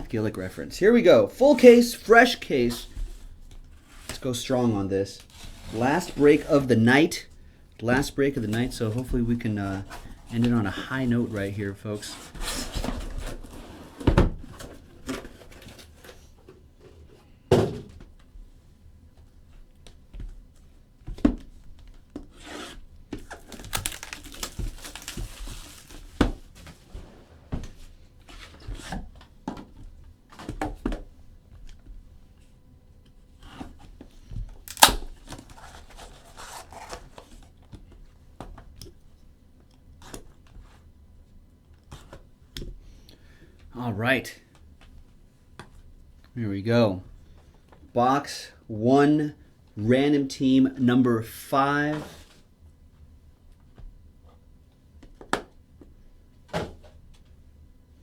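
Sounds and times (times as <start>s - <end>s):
tearing and rustling wrap: 22.3s - 26.2s, 34.7s - 37.4s
packaging snapping: 23.2s - 25.9s, 34.7s - 37.2s.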